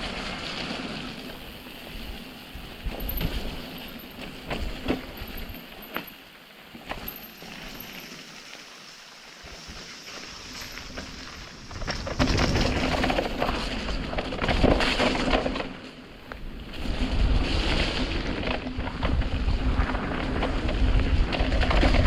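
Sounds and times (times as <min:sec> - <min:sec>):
bike rattling and knocking: 0:00.0 - 0:08.2, 0:09.5 - 0:22.0
wind on microphone: 0:16.2 - 0:22.0.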